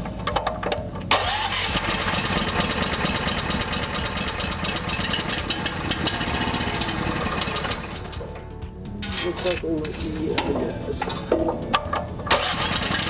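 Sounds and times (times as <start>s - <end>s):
small gasoline engine: 1.1s - 8.3s, 12.3s - 13.0s.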